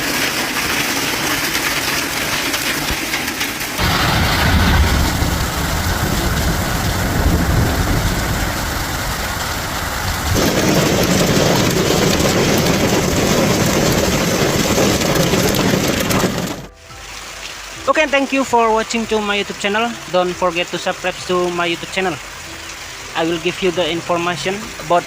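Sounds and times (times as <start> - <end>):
heavy rain on surfaces: 0.0 - 25.0
deep low rumble: 3.8 - 16.8.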